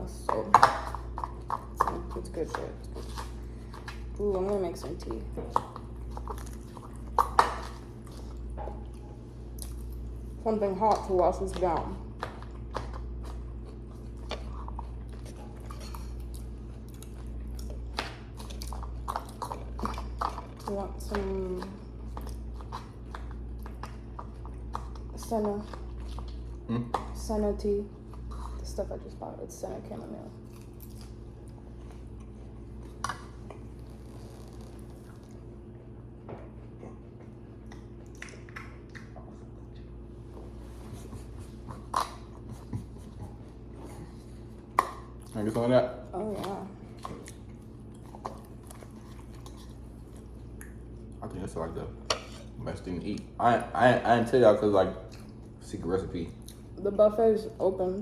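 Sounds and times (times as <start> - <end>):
chewing and biting food: 0.0 - 28.8, 30.3 - 56.8
steady low hum: 0.0 - 58.0.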